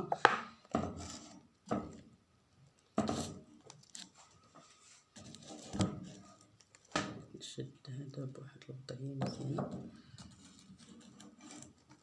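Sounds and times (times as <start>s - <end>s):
objects knocking and scraping: 0.0s - 2.1s, 2.9s - 3.5s, 4.5s - 7.3s.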